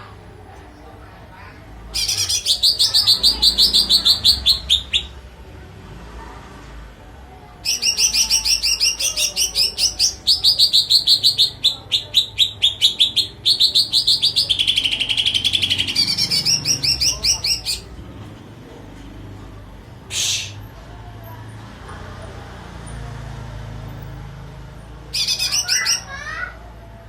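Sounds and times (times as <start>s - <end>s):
songbird chirping: 1.7s - 5.3s, 7.6s - 18.3s
buzzy bird trill: 1.9s - 5.2s, 7.6s - 17.9s, 20.1s - 20.6s, 25.1s - 26.6s.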